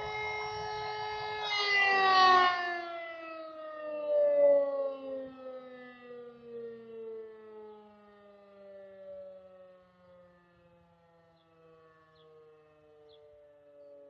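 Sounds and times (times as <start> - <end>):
siren winding down: 0.0 - 6.9.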